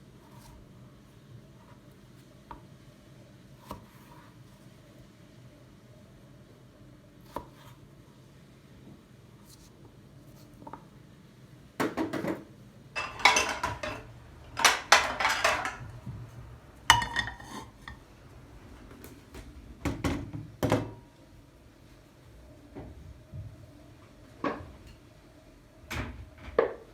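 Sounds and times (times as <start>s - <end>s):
dishes and cutlery clinking: 13.0s - 16.1s, 16.9s - 18.0s.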